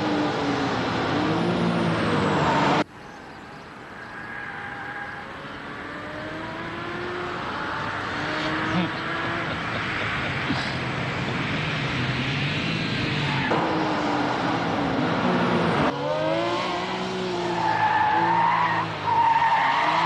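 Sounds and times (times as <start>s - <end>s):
car engine revving: 5.6s - 20.0s.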